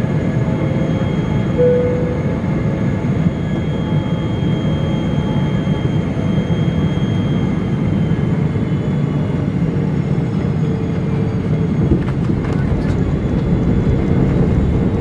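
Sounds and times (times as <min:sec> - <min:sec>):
engines and airflow rushing: 0:00.0 - 0:04.0, 0:07.8 - 0:15.0
faint high tones: 0:01.6 - 0:02.6.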